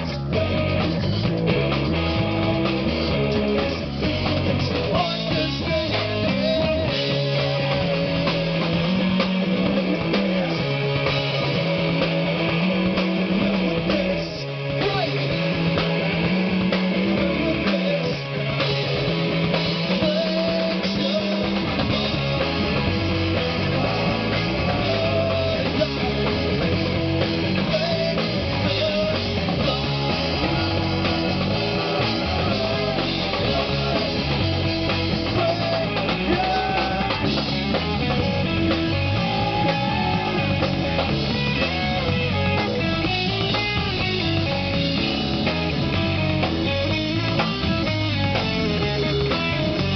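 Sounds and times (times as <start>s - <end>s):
rock band playing: 0.0s - 49.9s.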